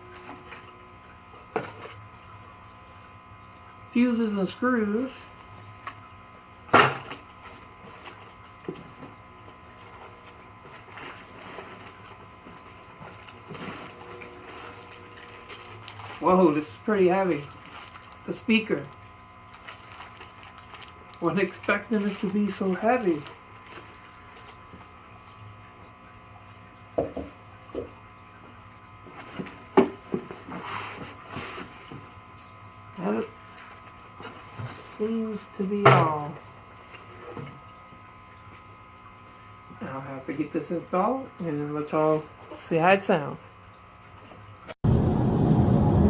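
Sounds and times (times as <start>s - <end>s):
steady low hum: 0.0s - 46.0s
handling parts and packaging: 9.8s - 18.7s, 19.5s - 24.7s.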